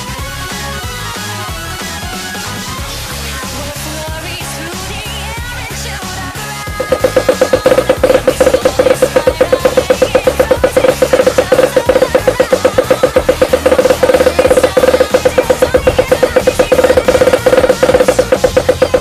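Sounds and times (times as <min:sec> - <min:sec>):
fast drum strokes: 0:06.7 - 0:19.0.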